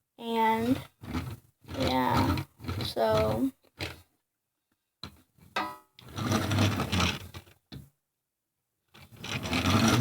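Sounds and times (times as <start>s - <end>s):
toy car wheels rattling: 6.1s - 7.4s, 9.0s - 10.0s.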